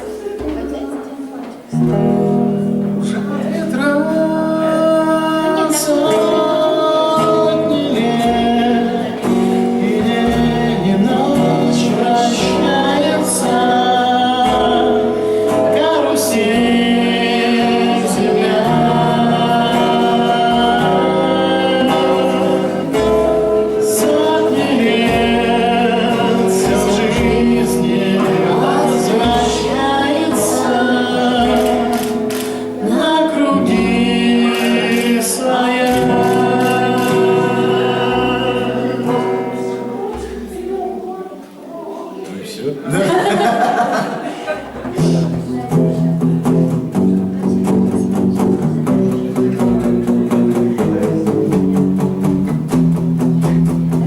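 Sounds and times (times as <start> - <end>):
acoustic guitar: 0.0 - 54.0
man singing: 3.0 - 41.2.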